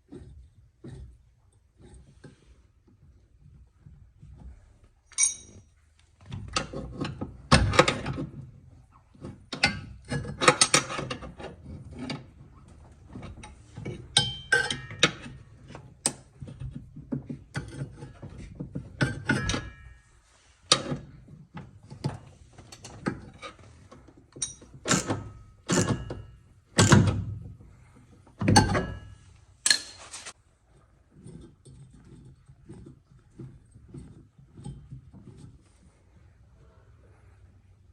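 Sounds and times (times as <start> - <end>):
metal parts knocking and clicking: 24.3 - 27.6, 28.4 - 30.0.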